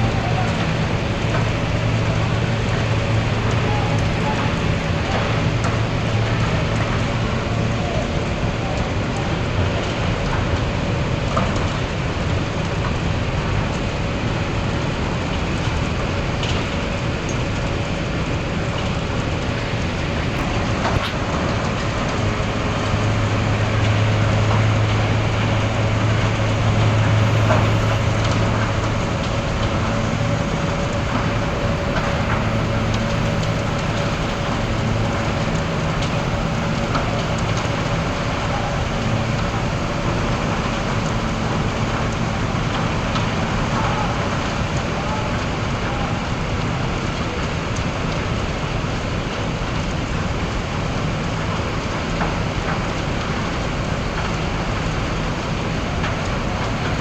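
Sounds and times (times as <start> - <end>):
crane engine running: 0.0 - 57.0
rushing noise: 12.1 - 57.0
deep hum: 20.4 - 47.3.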